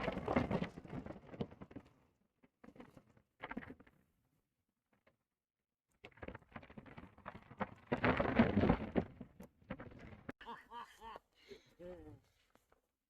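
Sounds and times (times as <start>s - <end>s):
horses knocking and rustling: 6.0s - 10.4s.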